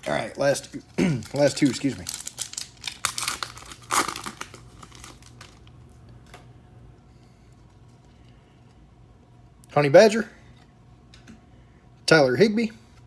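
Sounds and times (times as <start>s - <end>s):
wrapper tearing and crinkling: 0.0s - 5.7s.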